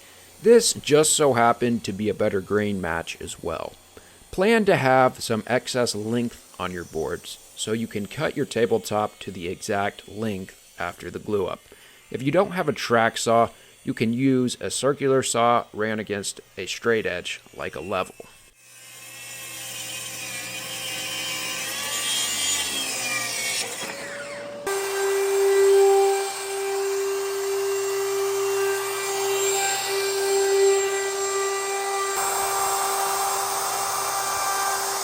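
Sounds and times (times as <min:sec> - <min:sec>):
power tool motor whine: 0:17.4 - 0:35.0.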